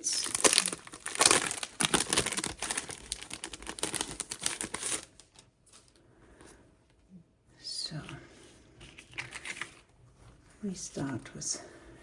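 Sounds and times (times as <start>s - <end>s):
sticker sheets crinkling and rustling: 0.0s - 6.0s, 8.8s - 11.2s.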